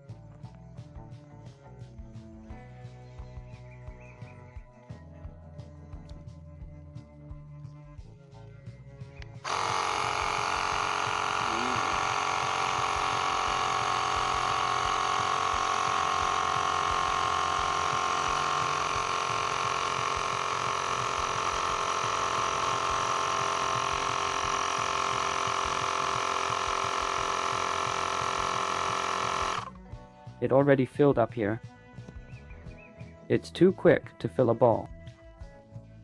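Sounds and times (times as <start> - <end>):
electric air pump running: 9.2 - 29.8.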